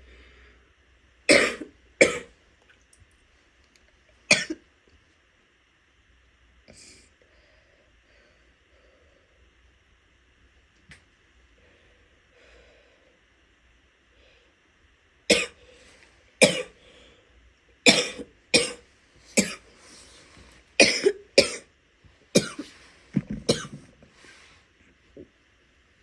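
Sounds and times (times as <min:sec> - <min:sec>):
woman coughing: 0:01.3 - 0:02.3, 0:15.3 - 0:15.6, 0:16.4 - 0:16.7, 0:17.9 - 0:18.8, 0:19.4 - 0:19.6, 0:20.8 - 0:21.7, 0:22.4 - 0:22.7, 0:23.5 - 0:23.8.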